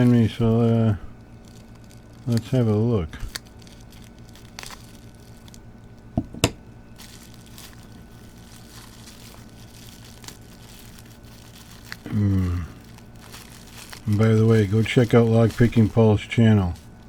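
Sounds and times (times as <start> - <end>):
packaging crinkling: 0.0 - 17.0
sharp knocks: 6.2 - 6.6.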